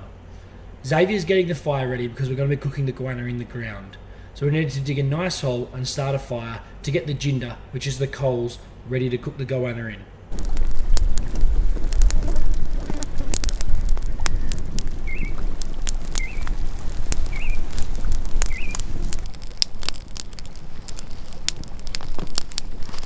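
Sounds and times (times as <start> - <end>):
low rumble: 10.3 - 19.3
wood fire crackling: 10.3 - 23.0
bird chirping: 14.0 - 19.2.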